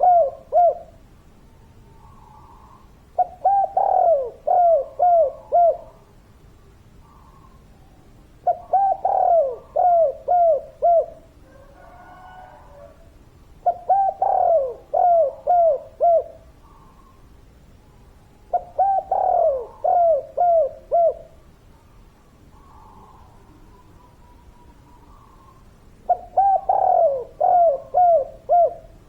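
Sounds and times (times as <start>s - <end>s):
dove cooing: 0.0s - 1.0s, 2.0s - 6.2s, 8.4s - 17.3s, 18.5s - 21.4s, 22.5s - 29.0s.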